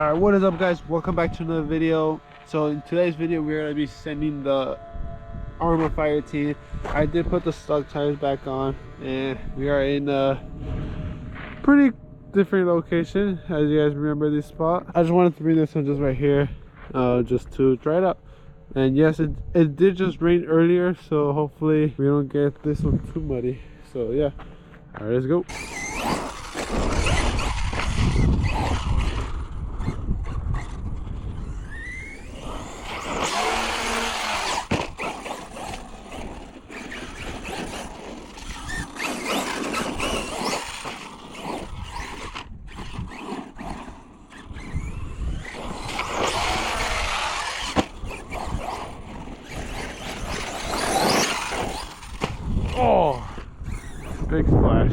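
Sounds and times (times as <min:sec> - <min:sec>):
tyres on muddy ground: 0:00.0 - 0:04.2, 0:23.7 - 0:54.3
electric motor whining: 0:00.0 - 0:14.6, 0:25.4 - 0:54.6.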